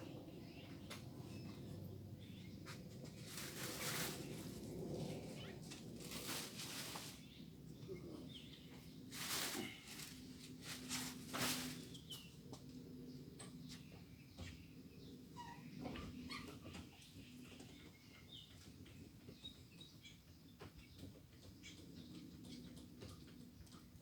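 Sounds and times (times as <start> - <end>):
scratchy rustles: 3.1 - 7.4, 9.1 - 12.2.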